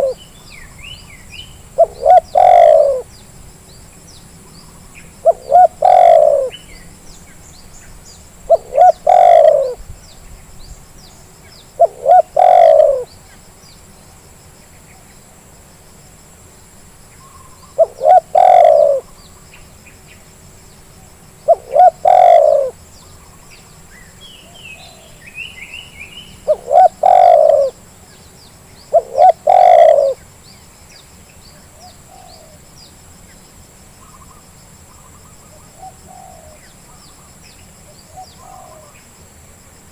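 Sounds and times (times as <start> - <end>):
dove cooing: 0.0 - 0.2, 1.8 - 3.1, 5.2 - 6.7, 8.4 - 9.8, 11.8 - 13.1, 17.3 - 19.2, 21.4 - 22.8, 26.4 - 27.8, 28.9 - 30.2, 35.2 - 37.0, 38.1 - 39.0
small birds chirping: 0.0 - 15.2, 17.1 - 39.1.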